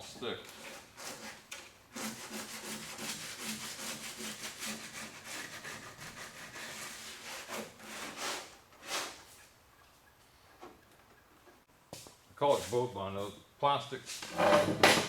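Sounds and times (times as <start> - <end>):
sandpaper scratching plastic: 0.5 - 9.4.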